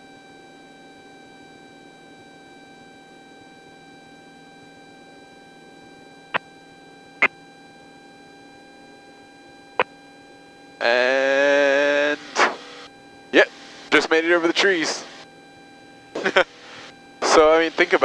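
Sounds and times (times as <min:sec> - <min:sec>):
low cockpit hum: 0:05.8 - 0:18.0.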